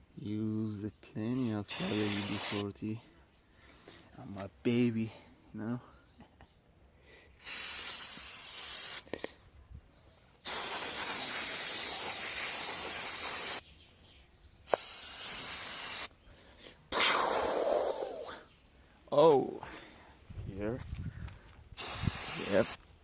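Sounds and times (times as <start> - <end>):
aerosol can spraying: 1.7 - 2.6, 7.4 - 9.1, 10.4 - 13.6, 14.7 - 16.1, 21.8 - 22.8.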